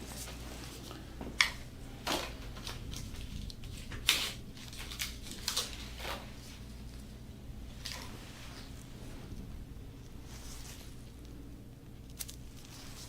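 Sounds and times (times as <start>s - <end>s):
steady low hum: 0.0s - 13.0s
hands rustling and clicking: 10.0s - 13.0s.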